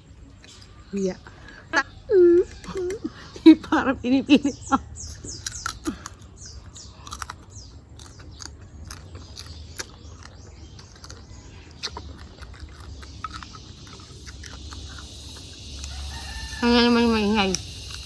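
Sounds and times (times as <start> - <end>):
small birds chirping: 0.0 - 18.0
steady low hum: 0.0 - 18.0
chewing clicks and smacks: 5.0 - 16.4, 17.4 - 18.0.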